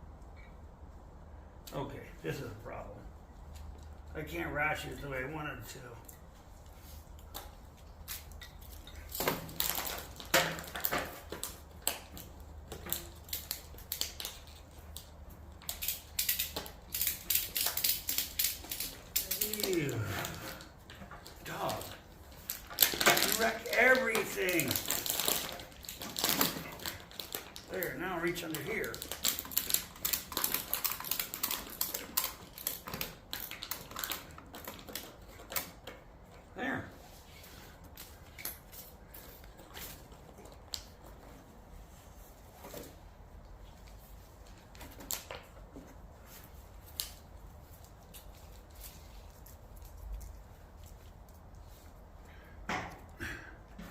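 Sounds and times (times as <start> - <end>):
strap clicks and rustling: 6.0 - 36.4.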